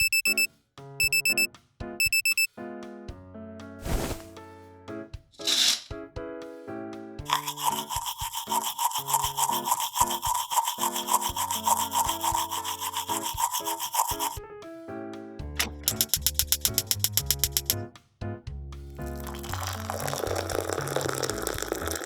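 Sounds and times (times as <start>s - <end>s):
toothbrush scrubbing teeth: 7.2s - 14.4s, 15.8s - 17.8s, 19.2s - 22.0s
background music: 15.1s - 22.0s.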